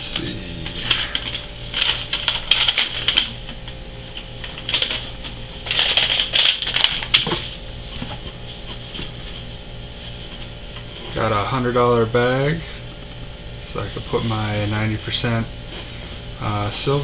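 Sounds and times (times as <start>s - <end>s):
packing material rustling: 0.6s - 10.4s.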